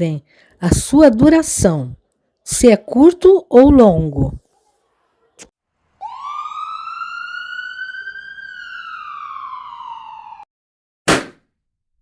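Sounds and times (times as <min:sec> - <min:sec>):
ambulance siren wailing: 0:06.0 - 0:10.5.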